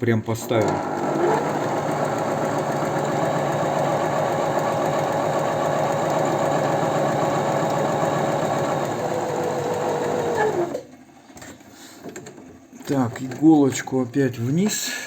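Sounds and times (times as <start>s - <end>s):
sewing machine running fast: 0.5s - 10.8s.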